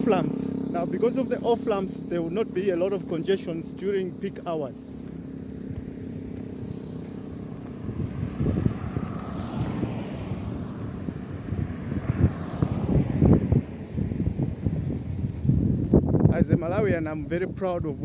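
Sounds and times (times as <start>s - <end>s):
vehicle passing: 0.0s - 15.8s
vehicle engine humming: 0.0s - 16.3s
wind buffeting microphone: 4.9s - 18.0s.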